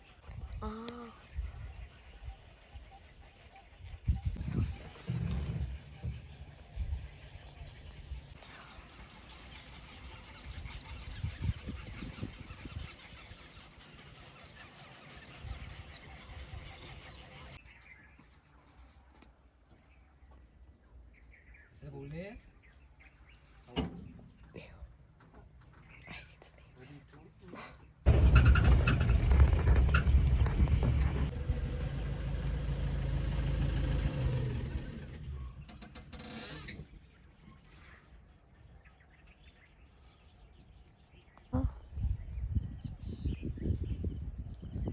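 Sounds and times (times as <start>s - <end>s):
birds chorus: 0.0s - 44.9s
jeep engine idling low: 28.1s - 35.7s
low rumble: 28.1s - 35.8s.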